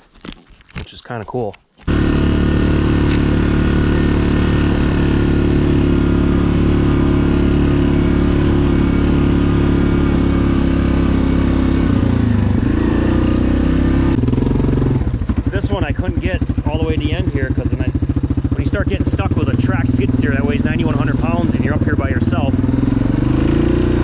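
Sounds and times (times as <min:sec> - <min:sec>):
single-cylinder engine running: 0:01.9 - 0:24.0.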